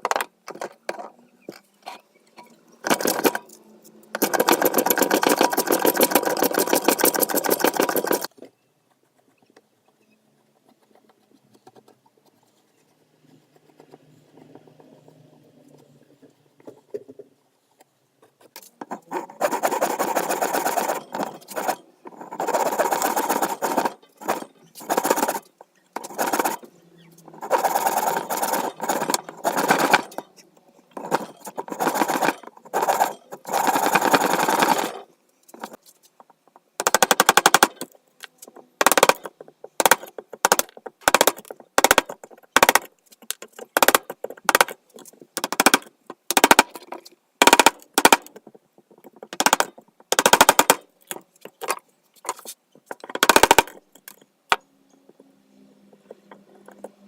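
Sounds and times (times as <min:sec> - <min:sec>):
workshop tool chattering: 0:04.1 - 0:08.3, 0:18.8 - 0:26.7, 0:27.3 - 0:35.8.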